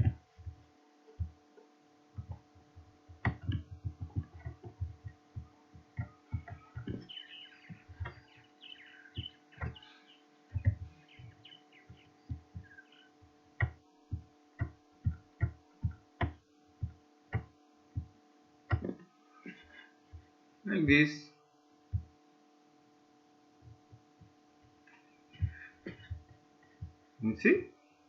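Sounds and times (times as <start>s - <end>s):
computer mouse clicks and thumps: 0.0s - 0.6s, 2.2s - 9.8s, 10.5s - 18.1s, 18.7s - 19.7s
electrical hum: 0.0s - 28.0s.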